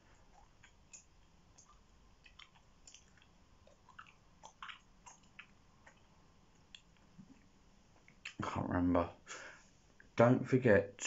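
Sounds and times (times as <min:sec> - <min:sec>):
gum chewing: 0:00.0 - 0:08.4.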